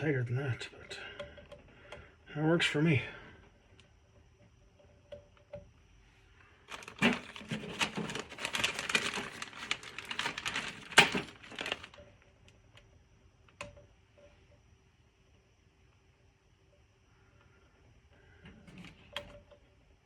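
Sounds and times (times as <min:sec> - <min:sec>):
rustling and crinkling: 0:06.6 - 0:12.3.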